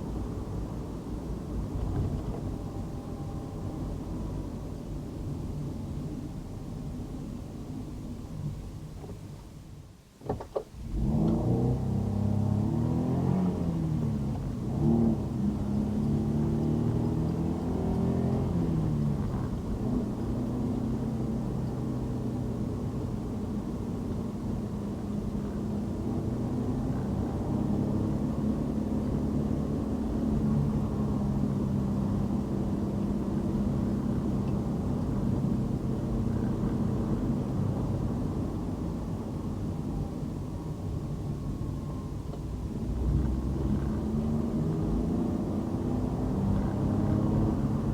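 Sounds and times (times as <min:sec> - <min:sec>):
road noise: 0:10.2 - 0:47.9
car engine pulling away: 0:10.8 - 0:47.9.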